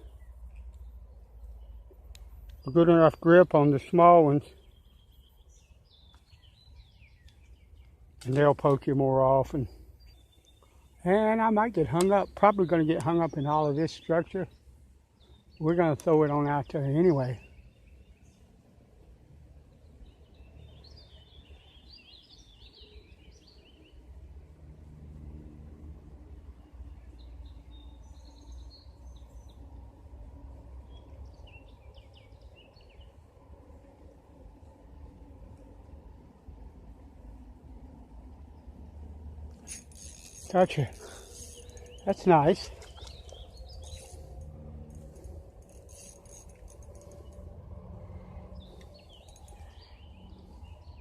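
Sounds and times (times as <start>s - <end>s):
songbirds chirping: 0.0s - 51.0s
low outdoor rumble: 29.7s - 51.0s
light clicks and clinks: 39.5s - 47.4s, 48.8s - 49.8s.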